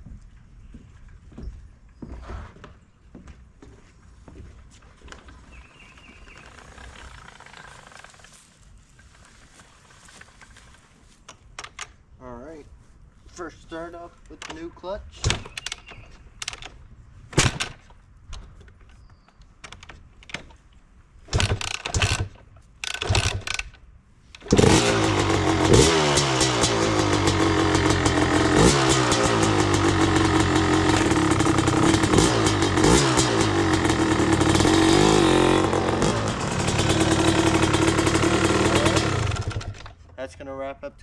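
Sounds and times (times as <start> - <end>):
dirt bike kick starting: 5.8 - 12.0, 21.3 - 23.8, 24.4 - 40.1
dirt bike engine revving: 24.4 - 39.8.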